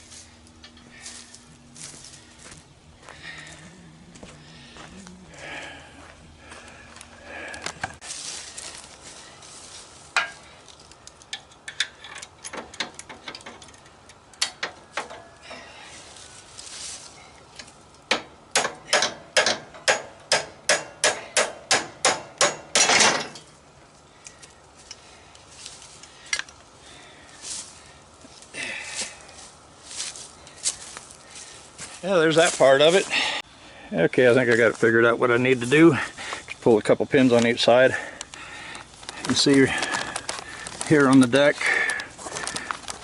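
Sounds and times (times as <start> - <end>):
hand tools knocking and clinking: 10.2 - 10.4, 11.3 - 15.3, 18.1 - 23.6
hammer blows on metal: 18.1 - 23.4
metal clank: 18.1 - 23.5.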